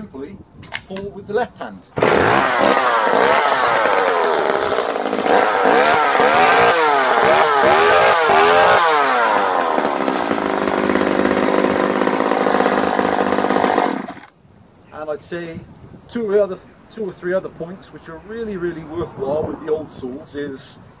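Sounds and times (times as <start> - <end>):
chainsaw engine revving: 2.0 - 14.3.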